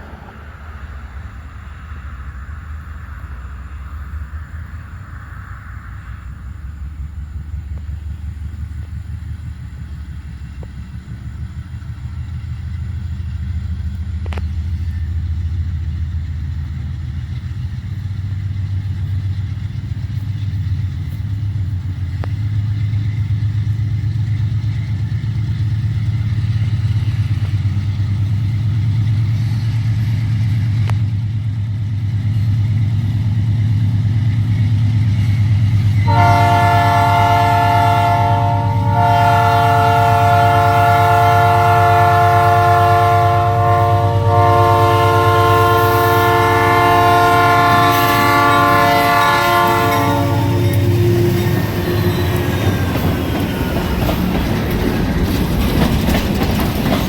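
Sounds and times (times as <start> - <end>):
locomotive engine rumble: 0.0 - 57.0
locomotive air horn chord: 36.0 - 52.4.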